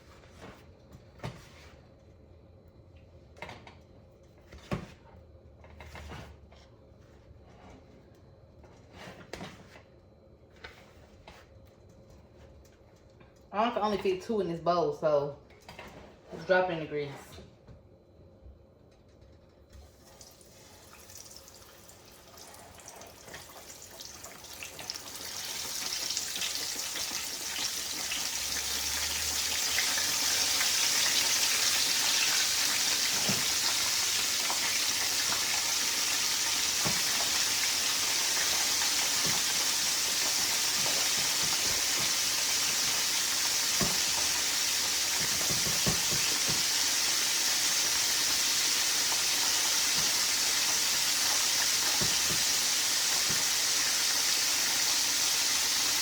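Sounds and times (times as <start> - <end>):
fish frying in hot oil: 19.8 - 56.0
oil popping and crackling: 20.0 - 56.0.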